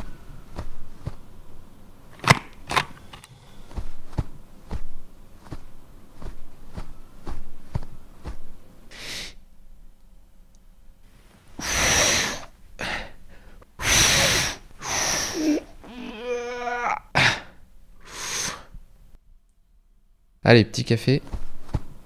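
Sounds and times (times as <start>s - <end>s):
breathy exhales: 3.0s - 3.9s, 11.6s - 16.4s, 17.1s - 18.8s.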